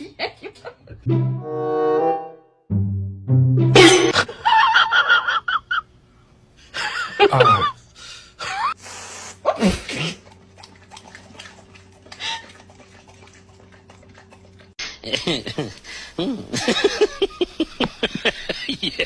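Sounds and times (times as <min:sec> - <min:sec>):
person sneezing: 0:08.8 - 0:10.2.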